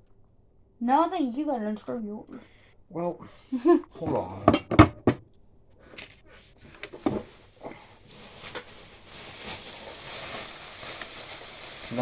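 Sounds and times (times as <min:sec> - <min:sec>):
steady rustling hiss: 0:06.1 - 0:12.0.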